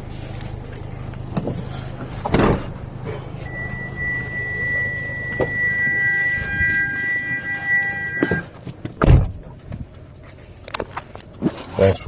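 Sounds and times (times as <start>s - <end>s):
vehicle engine idling: 0.0s - 12.0s
high-pitched tone: 3.4s - 8.6s
thump: 9.0s - 9.4s.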